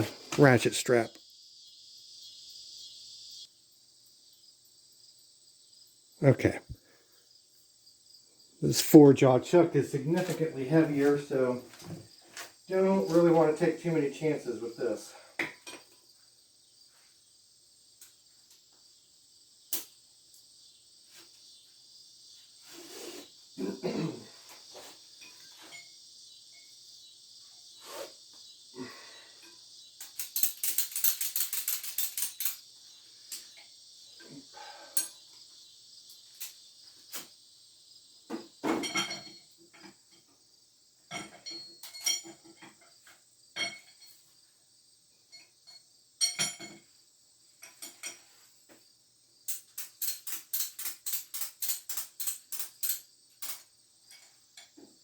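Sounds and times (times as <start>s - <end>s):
crickets chirping: 0.0s - 55.0s
metal clinks and knocks: 29.4s - 32.7s, 38.6s - 40.4s, 41.1s - 44.3s, 45.3s - 46.9s, 47.6s - 48.4s, 49.5s - 55.0s.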